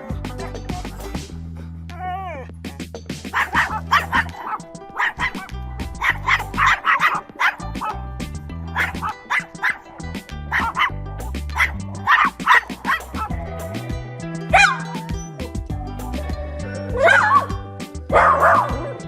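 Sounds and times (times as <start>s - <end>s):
background music with bass line: 0.0s - 19.0s
puppy yipping and barking: 3.3s - 8.0s, 8.8s - 9.9s, 10.5s - 10.9s, 11.5s - 13.4s, 14.5s - 15.2s, 17.0s - 18.8s.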